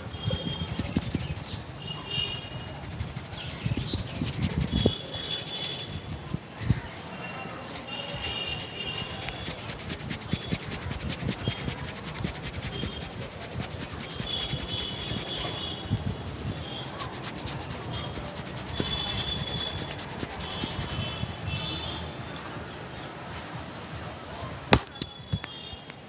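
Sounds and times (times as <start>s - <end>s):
hands rubbing scalp and hair: 0.0s - 6.9s, 7.7s - 22.9s, 24.8s - 25.1s
sharp taps on head: 24.8s - 25.2s.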